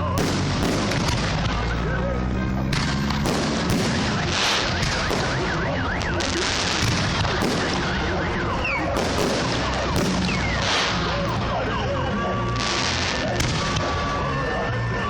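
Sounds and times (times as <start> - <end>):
crackling firework bursts: 0.0 - 11.5, 12.5 - 14.2
whistling firework shells: 2.7 - 11.4
held whistle-like tone: 4.4 - 14.6.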